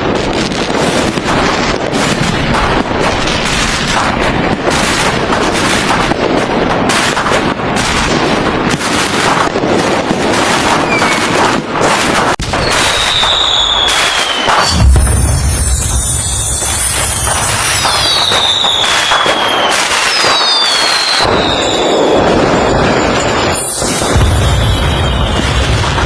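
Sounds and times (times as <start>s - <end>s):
fireworks bangs and crackling: 0.0s - 26.0s
whistle falling in pitch: 12.7s - 22.0s.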